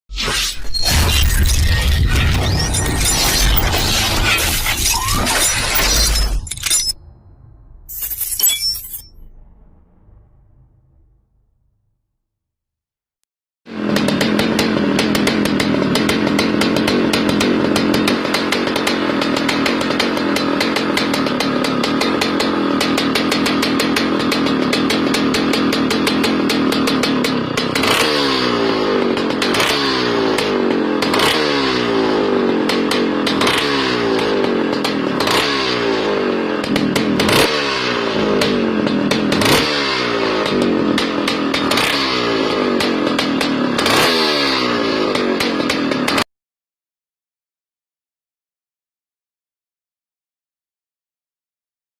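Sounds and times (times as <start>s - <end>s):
motorcycle engine idling and revving: 13.7s - 46.3s.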